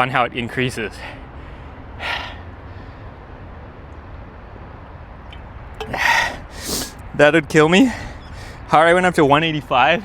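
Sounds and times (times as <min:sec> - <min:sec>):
man breathing out heavily: 0:05.8 - 0:07.0.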